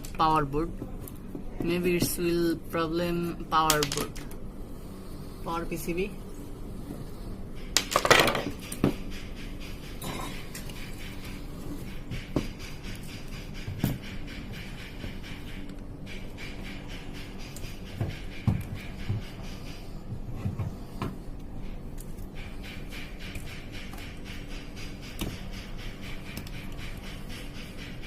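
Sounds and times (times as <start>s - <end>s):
low steady hum: 0.0s - 28.0s
hard parts clicking and clattering: 3.6s - 4.4s, 7.8s - 9.0s.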